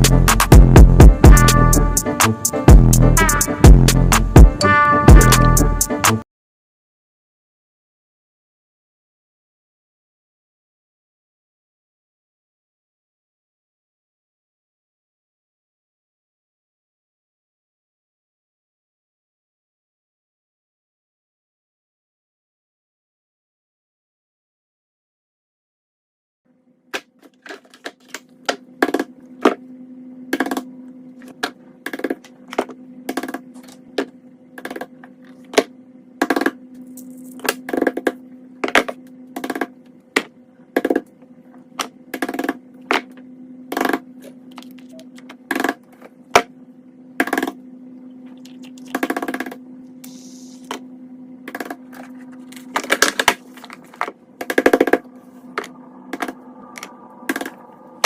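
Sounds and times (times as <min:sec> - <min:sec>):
steady low hum: 0:26.6 - 0:58.0.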